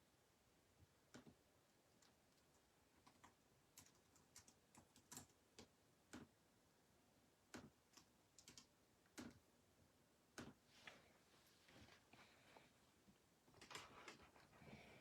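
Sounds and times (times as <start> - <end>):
faint sharp clicks and taps: 1.1 - 6.4, 10.3 - 11.0.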